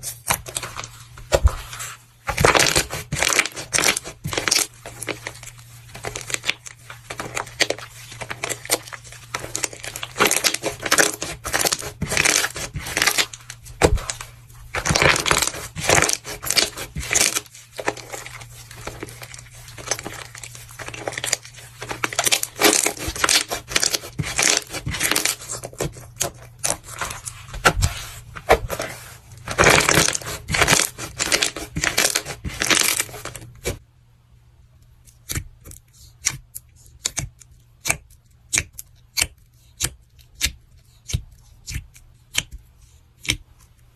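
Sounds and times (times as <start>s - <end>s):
brittle material crunching: 2.3s - 33.8s.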